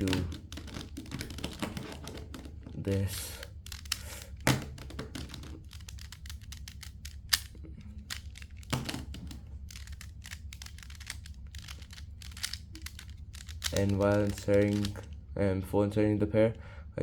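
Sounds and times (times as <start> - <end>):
puzzle cube plastic clicks: 0.0 - 2.5, 3.4 - 15.2
sharp cube clacks: 3.7 - 15.0.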